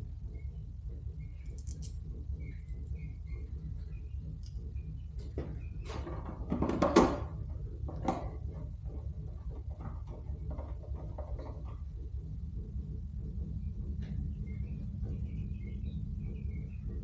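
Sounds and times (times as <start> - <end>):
steady low hum: 0.0 - 17.0
clicks and knocks of screws: 1.4 - 2.0.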